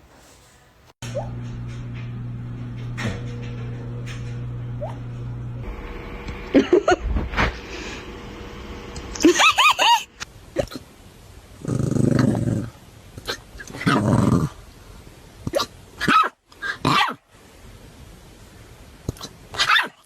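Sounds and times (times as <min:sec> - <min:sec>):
puppy growling: 0:11.6 - 0:12.8.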